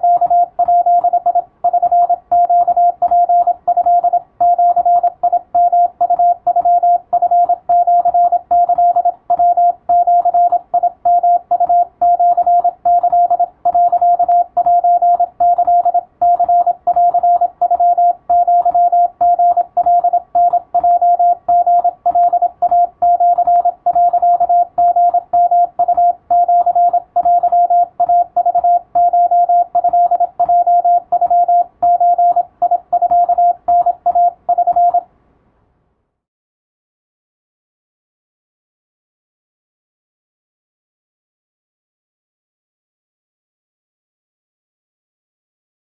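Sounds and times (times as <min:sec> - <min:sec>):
morse code tone: 0:00.0 - 0:35.0.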